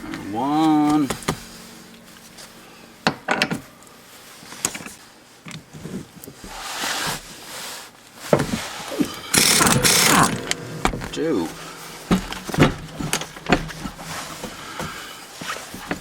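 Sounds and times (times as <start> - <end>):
hand tools clanking and knocking: 9.3 - 15.2.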